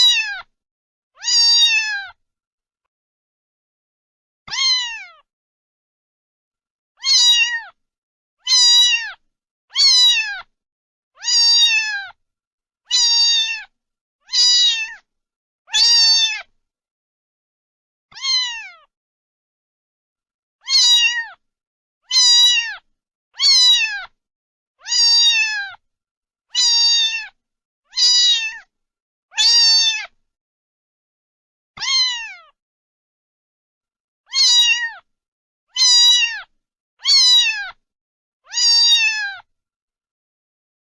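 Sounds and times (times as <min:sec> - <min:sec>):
cat meowing: 0:00.0 - 0:00.5, 0:01.2 - 0:02.2, 0:04.5 - 0:05.3, 0:07.0 - 0:07.8, 0:08.4 - 0:10.5, 0:11.2 - 0:12.2, 0:12.9 - 0:13.7, 0:14.3 - 0:15.0, 0:15.7 - 0:16.5, 0:18.1 - 0:18.9, 0:20.6 - 0:21.4, 0:22.1 - 0:24.2, 0:24.8 - 0:25.8, 0:26.5 - 0:28.7, 0:29.3 - 0:30.2, 0:31.8 - 0:32.6, 0:34.3 - 0:35.1, 0:35.7 - 0:37.8, 0:38.5 - 0:39.5.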